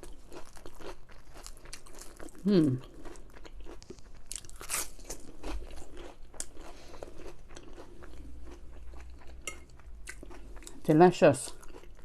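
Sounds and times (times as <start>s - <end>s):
crunchy chewing: 0.0s - 10.9s, 11.5s - 12.0s.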